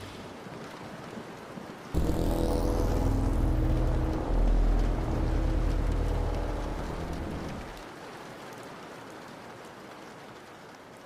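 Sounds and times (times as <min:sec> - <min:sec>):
steady rain falling: 0:00.0 - 0:11.0
low hum: 0:02.0 - 0:07.8.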